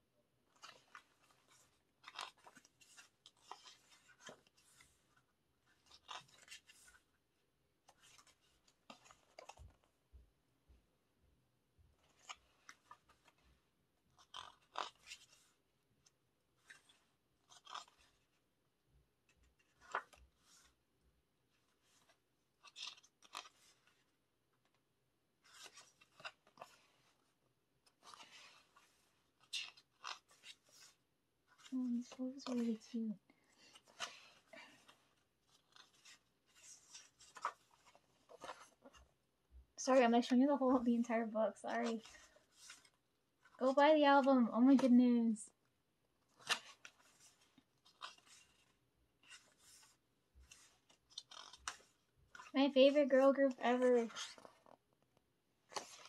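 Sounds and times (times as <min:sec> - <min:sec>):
paper pages turning: 0:00.5 - 0:07.2, 0:07.8 - 0:09.9, 0:12.0 - 0:18.5, 0:19.2 - 0:20.8, 0:21.5 - 0:24.8, 0:25.4 - 0:39.2, 0:39.9 - 0:45.0, 0:46.2 - 0:56.0.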